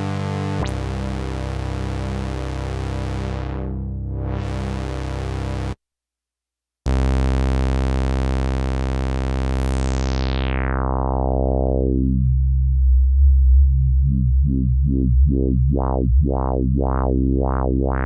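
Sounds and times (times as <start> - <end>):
buzzy synth bass note: 0.0 - 5.8, 6.9 - 18.0
synth filter pulses: 9.6 - 18.0.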